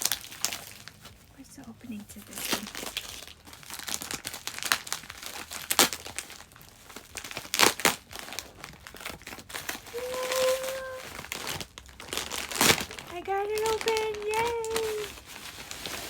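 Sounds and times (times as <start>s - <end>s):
package being torn open: 0.0s - 1.2s, 2.2s - 16.0s
packaging rustling and crackling: 0.0s - 16.0s.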